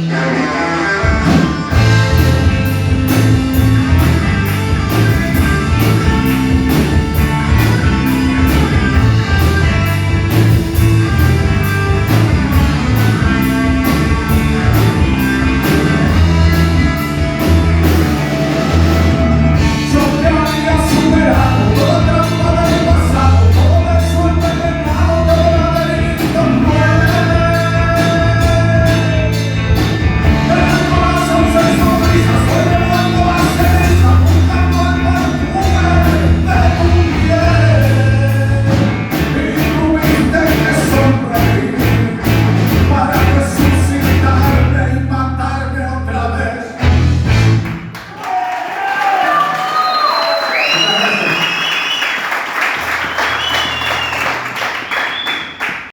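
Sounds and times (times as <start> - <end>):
rock band playing live: 0.0 - 48.1
person singing: 19.5 - 46.8.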